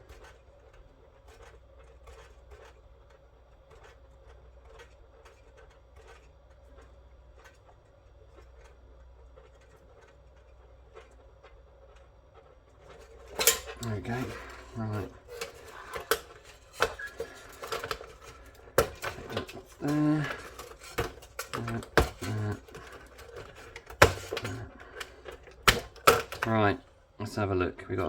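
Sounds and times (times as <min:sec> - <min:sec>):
low steady hum: 0:00.0 - 0:28.0
hand tools clicking on metal: 0:12.9 - 0:26.8.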